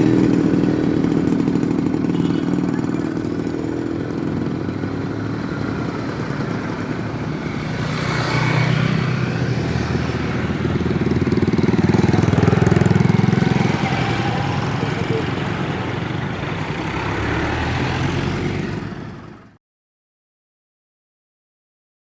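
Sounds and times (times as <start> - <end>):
vehicle engine running: 0.0 - 19.5.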